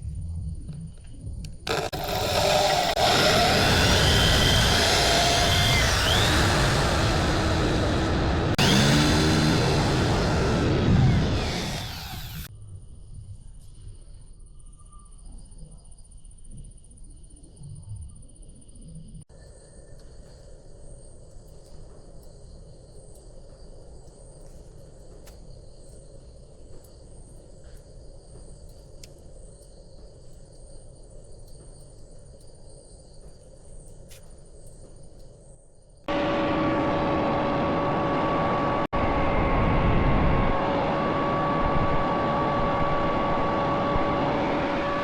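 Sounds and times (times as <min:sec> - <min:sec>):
electric workshop machine whining: 0:01.7 - 0:12.5, 0:36.1 - 0:45.0
crickets chirping: 0:14.0 - 0:36.1.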